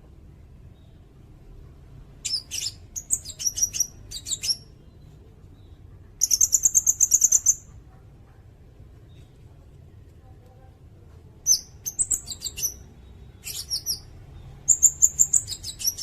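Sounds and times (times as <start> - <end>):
bird singing: 2.2 - 7.7, 11.5 - 16.0.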